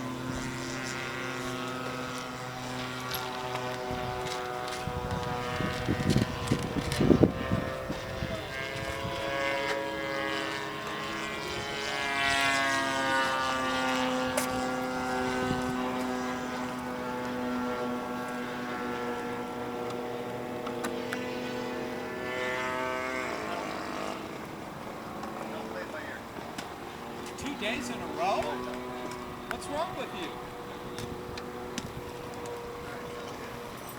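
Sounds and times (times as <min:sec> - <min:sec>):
model airplane engine and propeller: 0:00.0 - 0:33.9.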